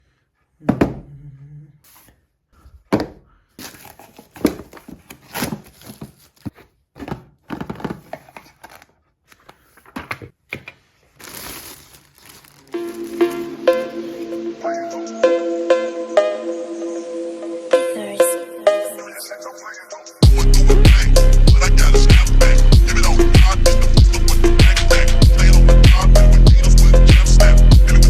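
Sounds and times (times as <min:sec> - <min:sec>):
box knocks and taps: 0:02.9 - 0:03.2, 0:06.0 - 0:08.2
packaging rustling and crinkling: 0:03.6 - 0:14.3.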